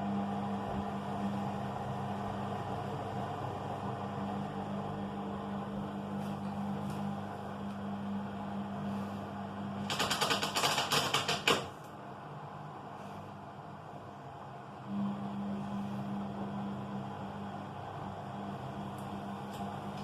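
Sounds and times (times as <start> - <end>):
washing machine humming: 0.0 - 20.0
fast rattling clatter: 9.8 - 11.7.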